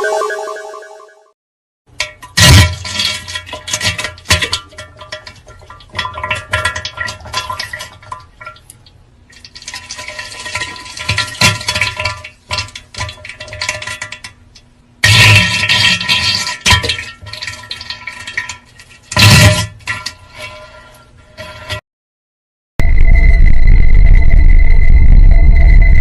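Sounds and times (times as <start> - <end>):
noisy watery sound: 1.9 - 21.8.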